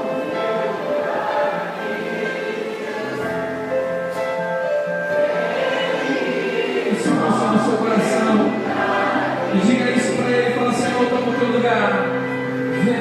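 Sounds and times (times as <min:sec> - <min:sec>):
voices singing: 0:00.0 - 0:03.9, 0:05.0 - 0:11.4
slow church worship music: 0:00.0 - 0:13.0.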